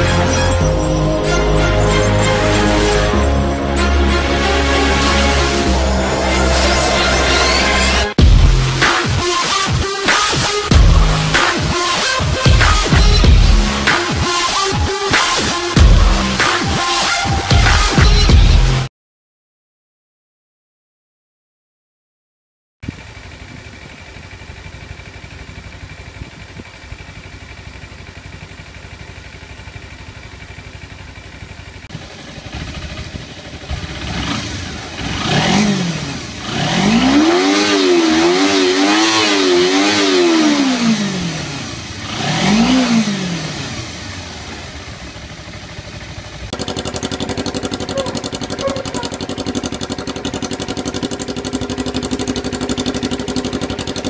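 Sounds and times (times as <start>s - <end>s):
motorcycle engine idling and revving: 0.0s - 18.9s, 22.8s - 54.0s.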